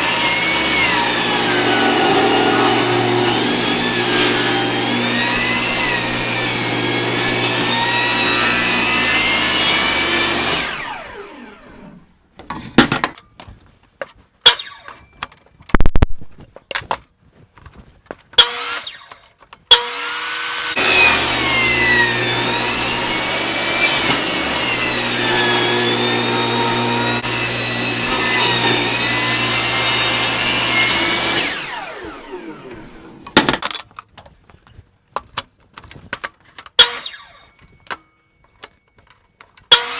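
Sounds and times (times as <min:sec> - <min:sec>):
table saw cutting log: 0:00.0 - 0:12.1, 0:18.4 - 0:19.0, 0:19.7 - 0:33.6, 0:36.8 - 0:37.4, 0:39.7 - 0:39.9.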